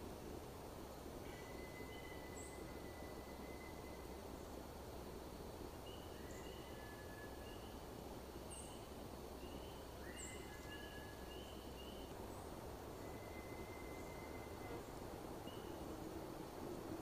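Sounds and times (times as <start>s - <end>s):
steady background hiss: 0.0s - 17.0s
longer lower whistles: 13.0s - 14.7s.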